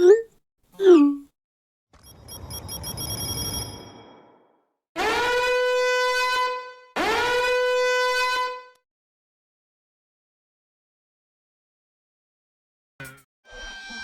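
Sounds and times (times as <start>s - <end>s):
swooping horn-like siren blasts: 5.0s - 8.7s.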